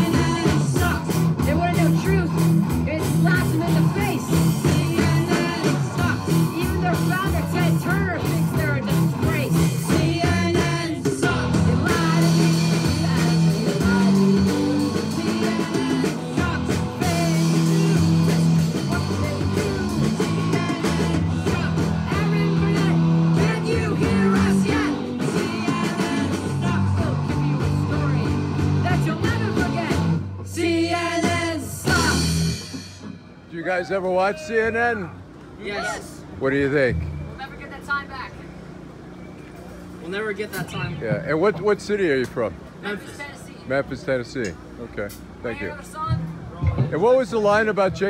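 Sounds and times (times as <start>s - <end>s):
voices singing: 0.0s - 36.4s
rock and roll band playing: 0.0s - 42.7s.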